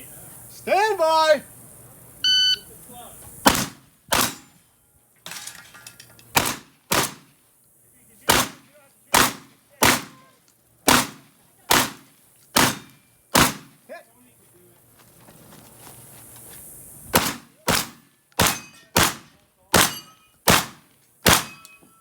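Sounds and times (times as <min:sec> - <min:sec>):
shotgun shots: 0:03.4 - 0:04.6, 0:06.3 - 0:07.4, 0:08.3 - 0:10.3, 0:10.9 - 0:13.8, 0:17.1 - 0:21.7.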